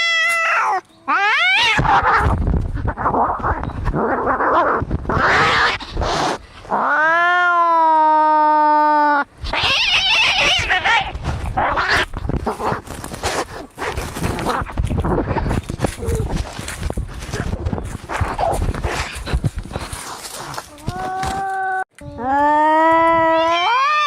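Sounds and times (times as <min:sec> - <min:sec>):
cat yowling: 0:00.0 - 0:02.3, 0:22.4 - 0:24.0
cats screeching and spitting: 0:00.0 - 0:08.2, 0:09.4 - 0:16.5.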